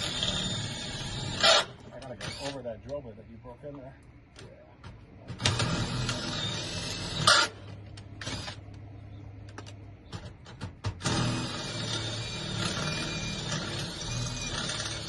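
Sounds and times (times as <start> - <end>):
power drill grinding into metal: 0.0 - 2.6, 5.4 - 8.6, 11.0 - 15.0.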